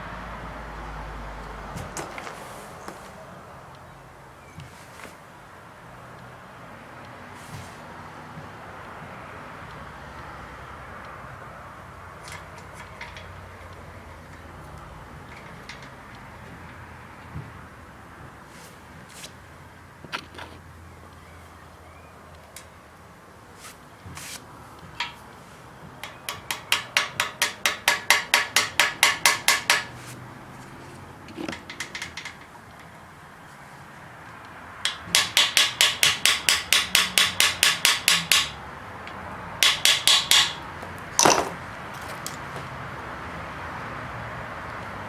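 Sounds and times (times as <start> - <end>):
hammer taps: 24.9 - 30.2, 34.8 - 42.7.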